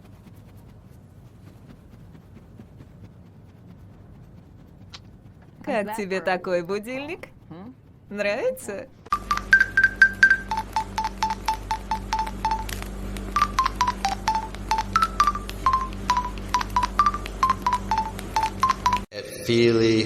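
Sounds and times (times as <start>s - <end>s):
steady low hum: 0.0s - 20.0s
keypad beeps with clicks: 9.1s - 12.8s, 13.4s - 19.1s.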